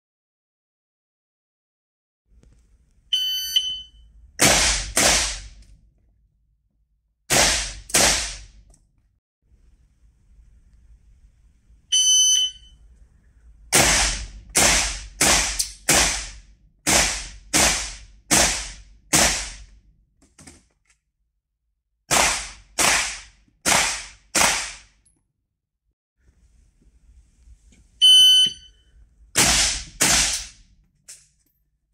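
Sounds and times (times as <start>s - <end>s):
shot timer beeps: 3.2s - 4.1s, 11.9s - 12.8s, 28.0s - 28.9s
rapid rifle fire: 4.4s - 5.6s, 7.3s - 8.6s, 13.7s - 19.7s, 22.1s - 24.9s, 29.4s - 30.6s.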